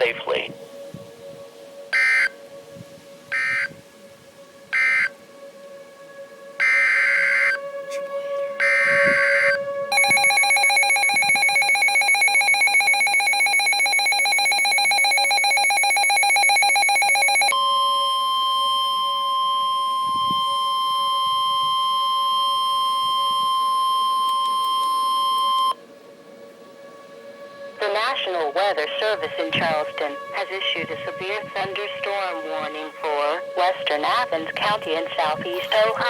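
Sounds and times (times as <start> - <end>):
steady warning alarm tone: 1.9 - 2.4, 3.3 - 3.8, 4.7 - 25.8
rapidly pulsing attention tone: 8.6 - 18.1.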